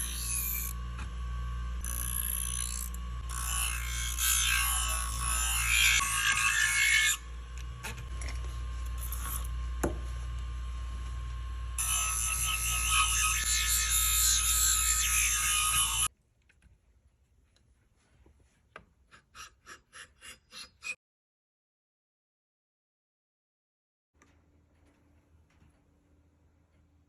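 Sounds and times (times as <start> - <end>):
sharpening machine humming: 0.0 - 16.1.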